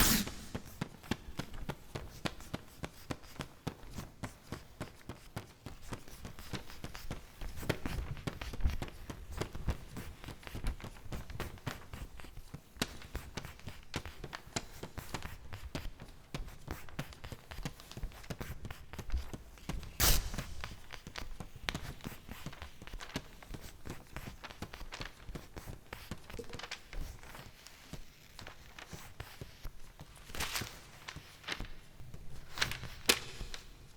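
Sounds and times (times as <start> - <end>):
paper crumpling: 26.3 - 27.4, 30.2 - 33.9.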